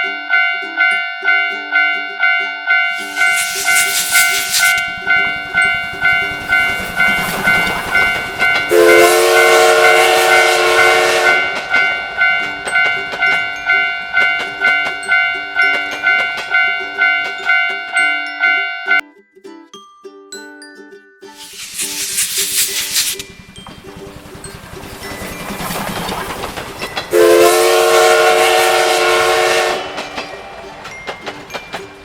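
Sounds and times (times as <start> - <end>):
railroad crossing alarm clanging: 0.0 - 19.0, 23.0 - 32.0
steam locomotive passing: 2.7 - 18.6, 21.3 - 32.0
locomotive whistle blowing: 2.8 - 15.0, 27.1 - 31.0
hiss of steam: 2.9 - 5.3, 21.4 - 23.4.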